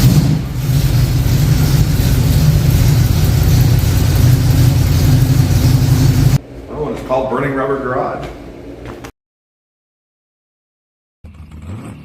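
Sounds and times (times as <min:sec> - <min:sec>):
car engine at fast idle: 0:00.0 - 0:06.4.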